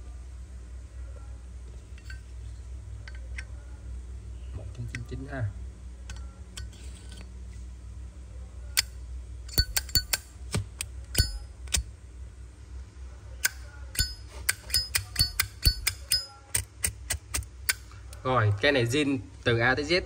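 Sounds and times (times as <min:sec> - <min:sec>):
lighter metallic clicks and clinks: 0:08.8 - 0:11.9, 0:13.4 - 0:18.2.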